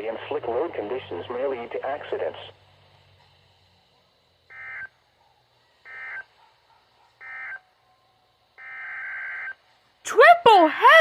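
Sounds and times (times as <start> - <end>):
buzzy digital data tones: 4.5 - 5.0, 5.8 - 6.4, 7.2 - 7.7, 8.6 - 10.6.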